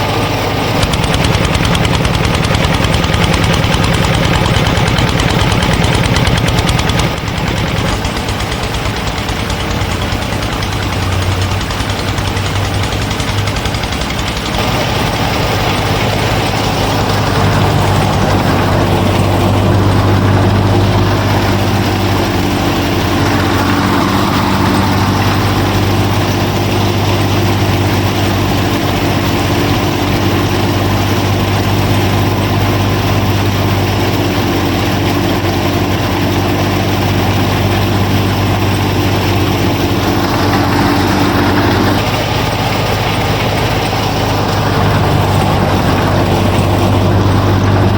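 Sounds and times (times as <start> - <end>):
higher hum: 0.5 - 28.2, 37.4 - 47.9
motor humming: 0.7 - 30.4.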